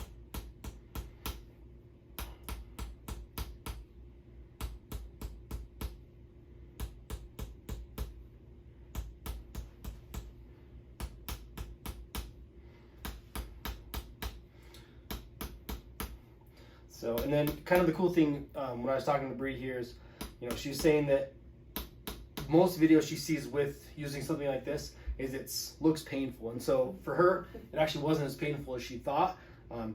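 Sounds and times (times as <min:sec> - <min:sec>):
wooden mallet tapping wooden wedge: 0:02.2 - 0:03.9, 0:06.7 - 0:08.2, 0:08.9 - 0:10.4.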